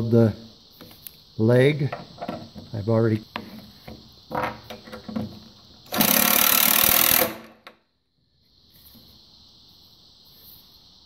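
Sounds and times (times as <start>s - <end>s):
power drill driving screw into wood: 5.8s - 7.6s.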